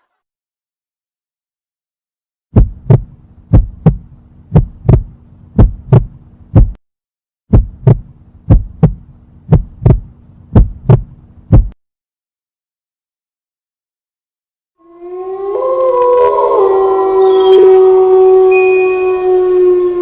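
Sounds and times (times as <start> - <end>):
heartbeat thumps: 2.5 - 6.8, 7.5 - 11.8.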